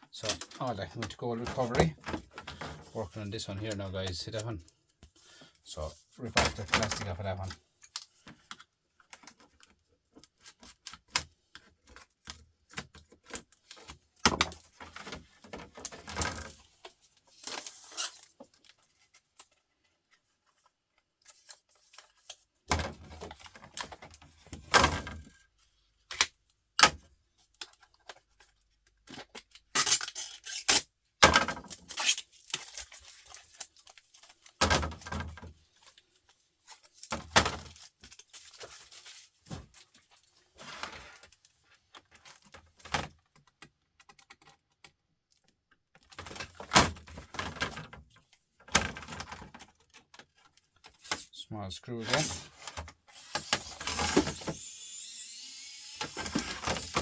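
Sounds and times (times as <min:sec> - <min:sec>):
plastic scraping and tearing: 0:06.4 - 0:19.6, 0:27.4 - 0:57.0
plastic clicking and cracking: 0:41.2 - 0:51.2.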